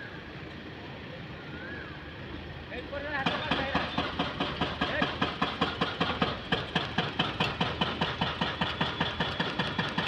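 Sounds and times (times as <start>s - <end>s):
diesel locomotive chugging: 2.2s - 10.0s.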